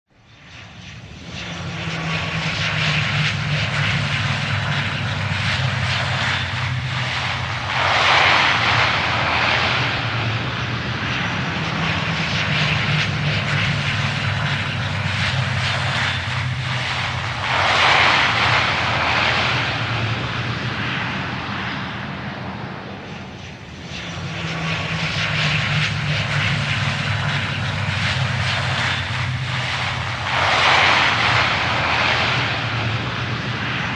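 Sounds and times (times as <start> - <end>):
jet engine noise: 0.1 - 33.9.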